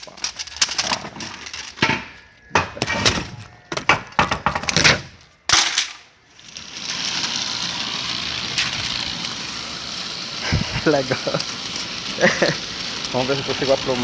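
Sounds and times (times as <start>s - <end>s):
steady hiss: 7.2s - 14.0s.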